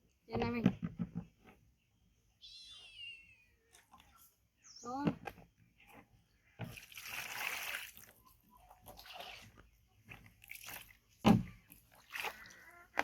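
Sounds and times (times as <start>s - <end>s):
faint splashes: 6.6s - 13.0s.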